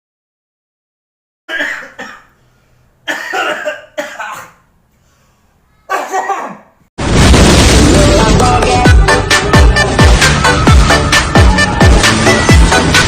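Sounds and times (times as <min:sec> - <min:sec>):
person coughing: 0:01.5 - 0:02.4, 0:03.1 - 0:04.6, 0:05.9 - 0:06.7.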